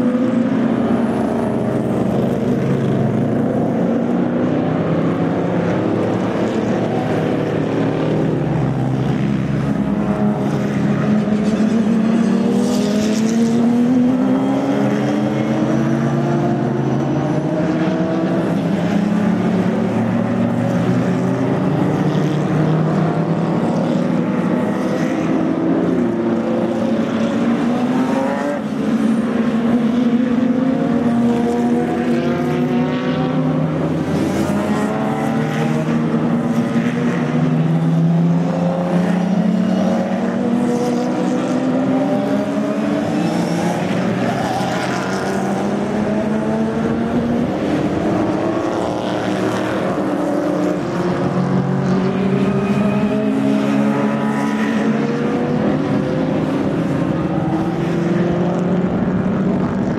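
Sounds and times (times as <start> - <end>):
racing car engines revving: 0.0 - 59.9.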